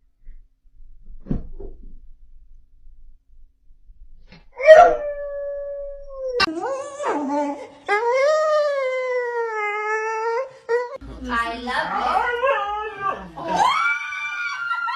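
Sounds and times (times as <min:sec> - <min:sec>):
dog howling: 0:04.6 - 0:11.0, 0:11.9 - 0:14.9.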